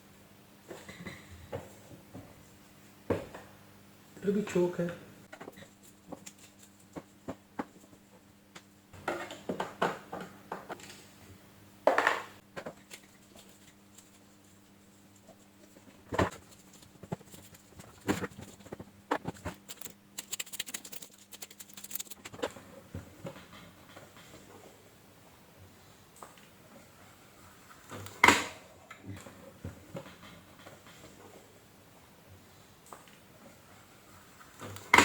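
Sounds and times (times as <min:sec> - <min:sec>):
plastic parts clicking and scraping: 0:16.2 - 0:22.6.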